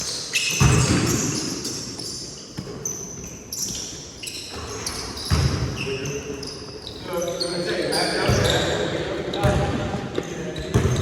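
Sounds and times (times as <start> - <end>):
sneakers squeaking on floor: 0.0 - 11.0
basketball bouncing: 0.6 - 1.2, 5.3 - 5.7, 10.6 - 11.0.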